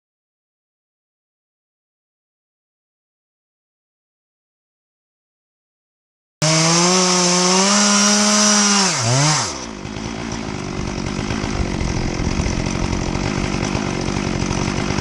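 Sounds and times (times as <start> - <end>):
chainsaw cutting log: 6.4 - 15.0.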